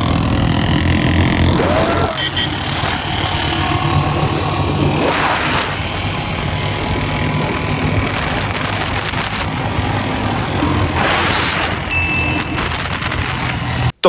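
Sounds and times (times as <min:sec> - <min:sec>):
motorcycle engine running: 0:00.0 - 0:11.0, 0:11.6 - 0:13.9
brief rush of noise: 0:10.9 - 0:12.0.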